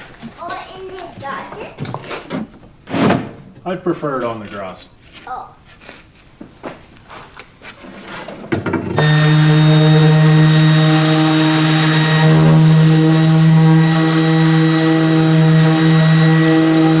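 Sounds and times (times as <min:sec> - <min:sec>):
power sander on wood: 0:08.9 - 0:17.0.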